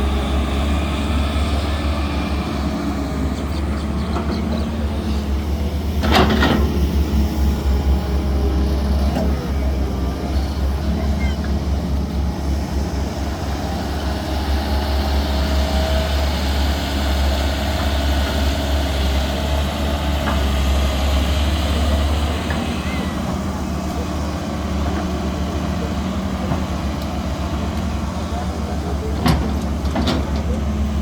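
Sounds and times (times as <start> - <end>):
diesel engine droning: 0.0 - 31.0.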